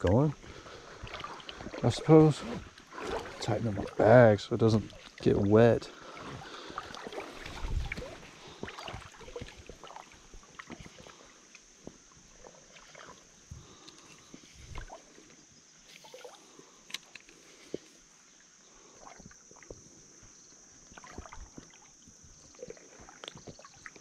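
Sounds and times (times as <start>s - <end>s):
dull thumps of wading steps: 0.0s - 11.2s
legs sloshing through river water: 0.0s - 24.0s
small splashes: 0.1s - 15.2s, 15.9s - 17.6s, 20.8s - 24.0s.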